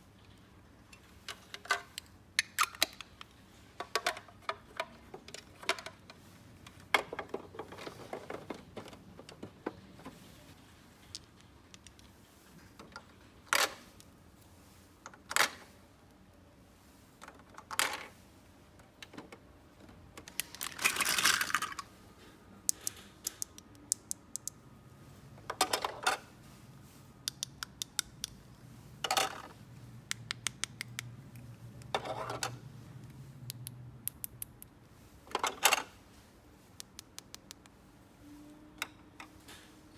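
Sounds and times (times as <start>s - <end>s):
plastic toy pieces clicking: 22.7s - 24.6s, 27.3s - 28.4s.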